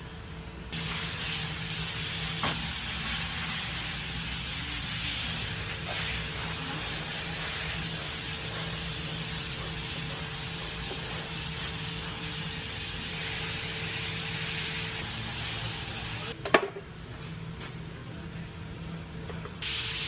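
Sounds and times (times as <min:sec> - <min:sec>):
steady hiss: 0:00.7 - 0:16.4, 0:19.6 - 0:20.0.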